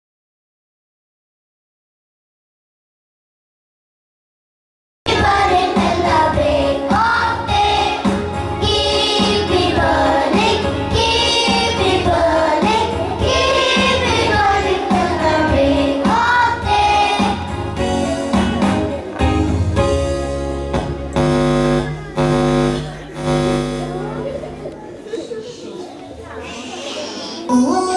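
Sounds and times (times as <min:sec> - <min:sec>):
voices singing together: 0:05.1 - 0:17.8
steady beat: 0:20.8 - 0:24.6.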